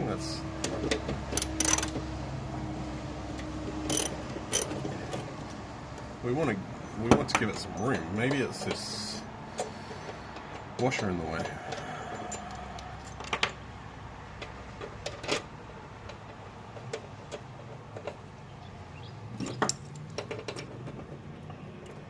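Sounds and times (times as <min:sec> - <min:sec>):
metal tools clinking: 0:07.4 - 0:13.6.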